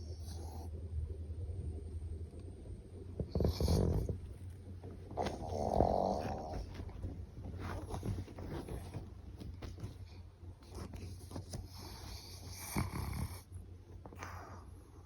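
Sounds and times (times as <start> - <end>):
dog snoring: 0.1 - 0.7, 3.2 - 4.5, 5.1 - 6.8, 11.6 - 13.6.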